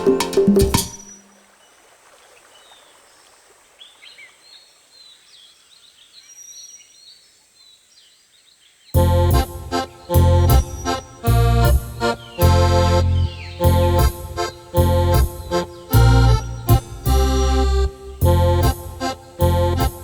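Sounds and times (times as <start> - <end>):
bird chirps: 0.0 - 1.8, 3.8 - 17.8
loud music: 9.0 - 20.0.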